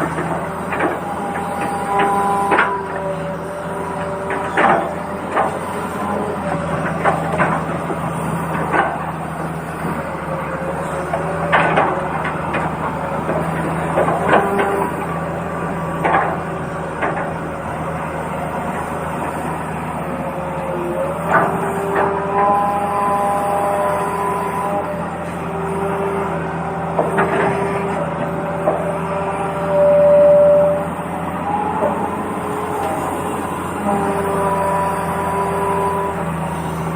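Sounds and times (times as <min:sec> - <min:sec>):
model motor hum: 0:00.0 - 0:36.9
knocks and clatter: 0:11.1 - 0:17.9, 0:26.9 - 0:29.1.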